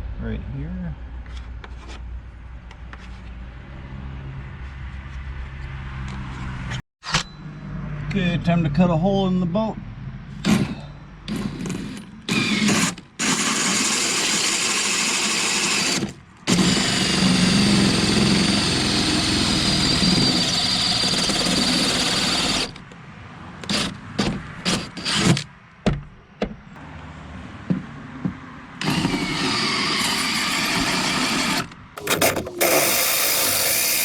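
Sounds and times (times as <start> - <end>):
power drill cutting fiberglass: 12.3 - 22.8, 28.8 - 34.0.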